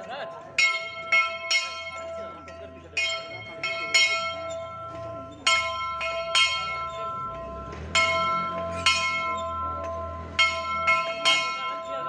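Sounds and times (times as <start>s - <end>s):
metal bell struck: 0.6s - 12.0s.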